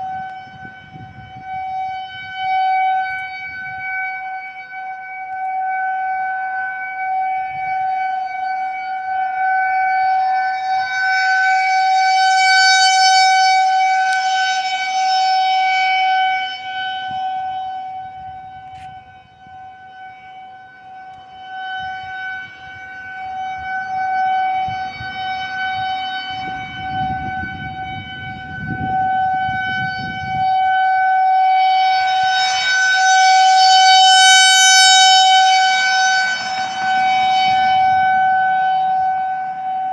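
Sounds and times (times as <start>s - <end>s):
warning siren steady tone: 0.0s - 39.9s.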